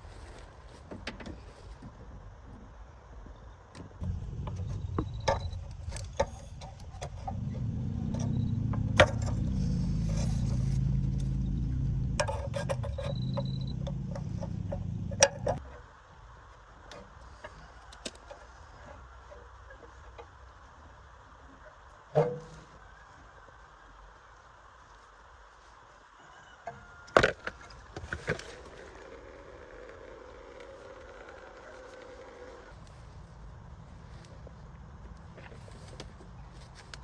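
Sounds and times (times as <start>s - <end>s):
car engine running: 4.0s - 15.6s
metallic clicks and rattles: 4.0s - 15.6s.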